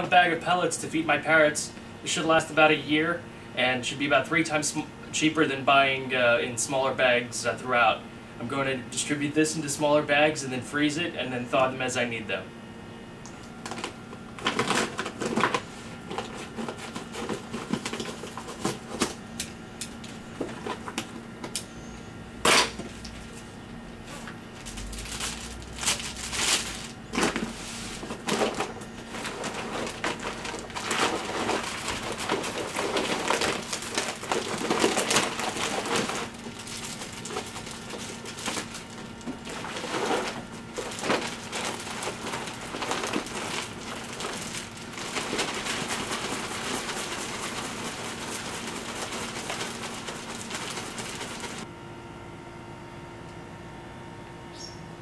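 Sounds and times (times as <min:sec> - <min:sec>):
plastic bags crinkling: 0:13.5 - 0:19.2, 0:22.6 - 0:51.6
dry pellets rattling: 0:24.6 - 0:51.6.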